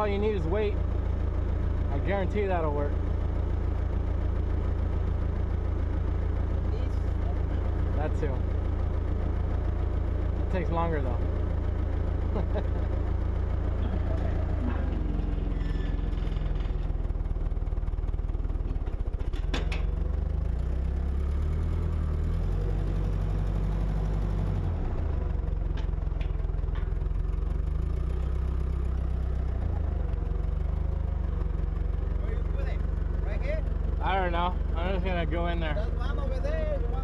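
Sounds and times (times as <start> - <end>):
low machine hum: 0.0 - 21.2.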